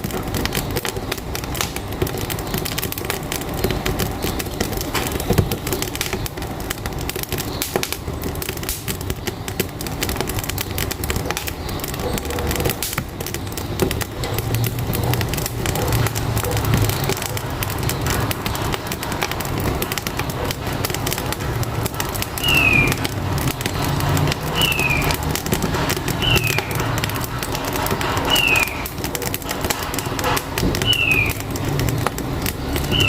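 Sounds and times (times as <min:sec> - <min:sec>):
truck engine rumble: 0:00.0 - 0:33.0
wood fire crackling: 0:00.0 - 0:33.0
bird whistling: 0:22.4 - 0:23.0, 0:24.6 - 0:25.1, 0:26.2 - 0:26.8, 0:28.3 - 0:28.9, 0:30.8 - 0:31.4.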